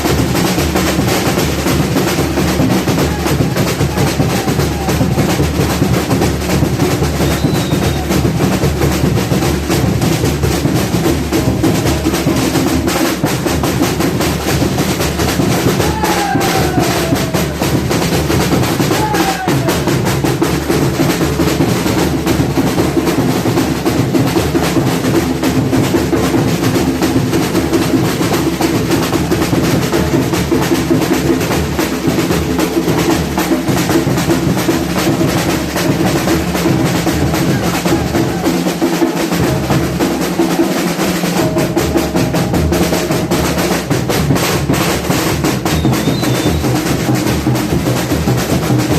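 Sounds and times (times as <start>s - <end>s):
drum ensemble playing: 0.0s - 48.9s
sliding pitched calls: 7.2s - 8.2s, 45.6s - 46.9s.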